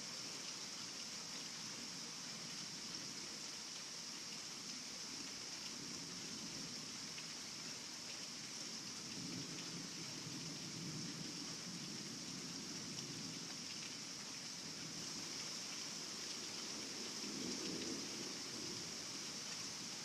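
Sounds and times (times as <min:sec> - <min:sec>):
heavy rain pouring: 0:00.0 - 0:20.0
low rumble of thunder: 0:09.0 - 0:13.5, 0:16.9 - 0:19.2.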